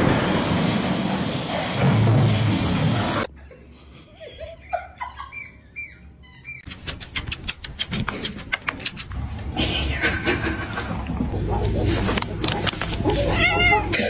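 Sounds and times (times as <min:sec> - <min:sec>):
loud rushing noise: 0:00.0 - 0:03.3
small animal squeaky calls: 0:05.3 - 0:08.0.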